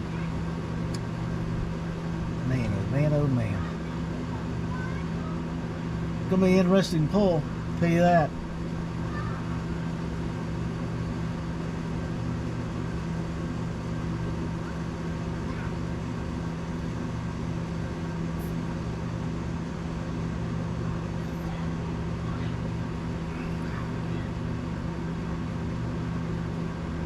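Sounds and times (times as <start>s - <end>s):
low machine hum: 0.0s - 27.0s.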